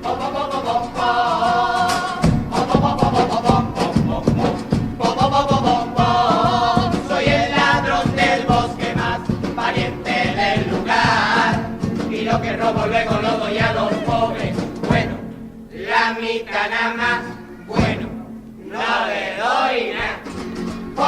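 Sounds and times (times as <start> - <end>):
group singing in chorus: 0.0 - 21.0
steady percussion beat: 1.9 - 15.4.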